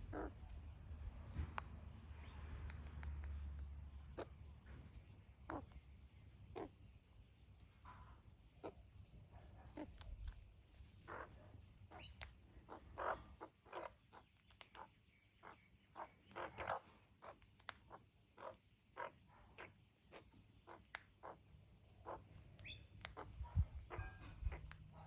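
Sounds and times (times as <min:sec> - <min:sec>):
magpies giving short calls: 0:00.0 - 0:01.2, 0:11.0 - 0:25.0.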